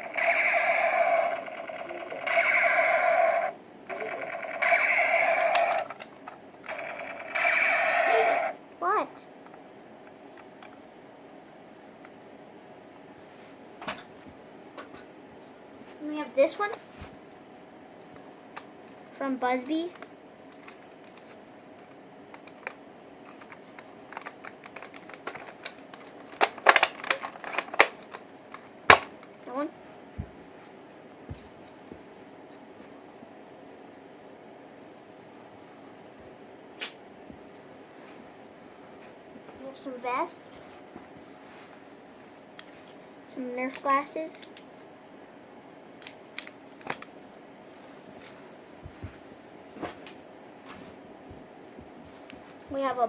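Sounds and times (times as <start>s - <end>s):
toy gun electronic firing buzz: 0.0s - 6.0s, 6.7s - 8.6s
plastic toy guns clicking: 4.6s - 6.1s, 26.4s - 28.2s.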